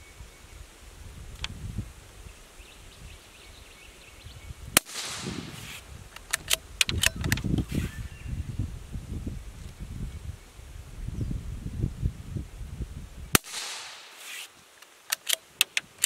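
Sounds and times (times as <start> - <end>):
rifle shot crack: 4.8 - 6.6, 13.4 - 14.4
rifle bolt clicking: 6.2 - 7.5, 15.1 - 15.9.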